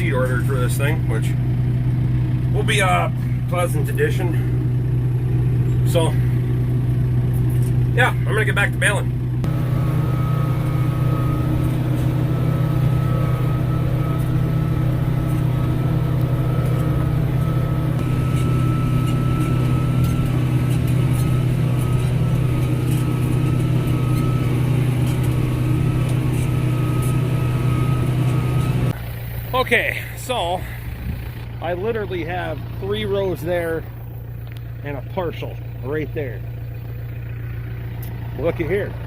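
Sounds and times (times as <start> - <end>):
tractor engine running: 0.0 - 39.0
thin high whine: 9.5 - 30.4.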